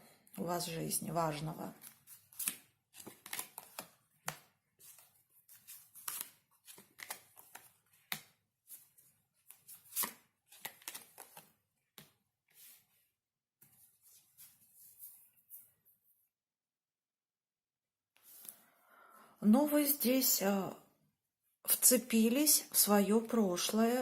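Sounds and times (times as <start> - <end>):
cards being shuffled: 1.8 - 12.8.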